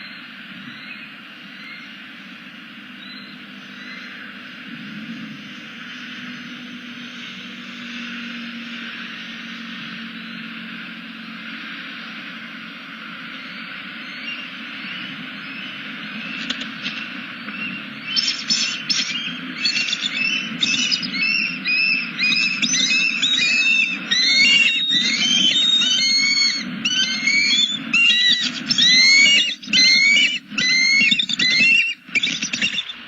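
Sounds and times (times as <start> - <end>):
eagles chattering calls: 14.8 - 33.0.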